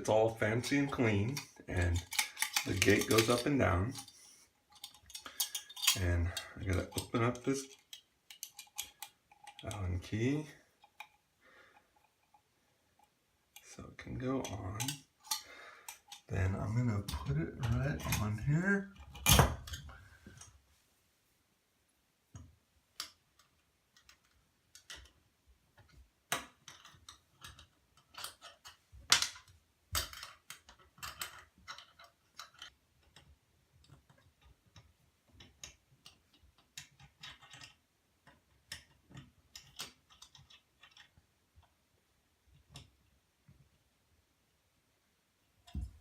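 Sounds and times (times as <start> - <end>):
clicks taps and scrapes of fitting: 0.4 - 10.0, 10.6 - 20.6, 22.3 - 41.8
allen wrench tightening screw: 1.3 - 9.7, 35.4 - 41.2.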